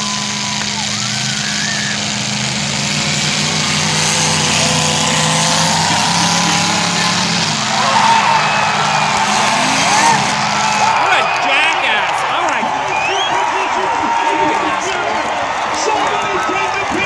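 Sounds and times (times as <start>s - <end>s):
people shouting: 0.0s - 2.2s, 3.4s - 17.0s
car engines revving: 0.0s - 17.0s.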